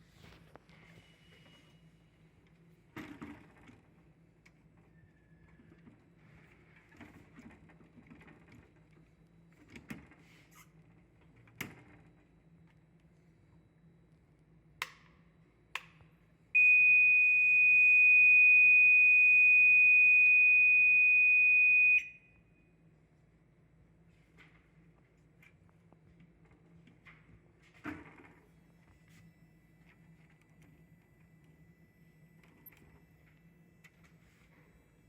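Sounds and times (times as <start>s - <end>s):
fire alarm buzzer tone: 16.6s - 22.5s.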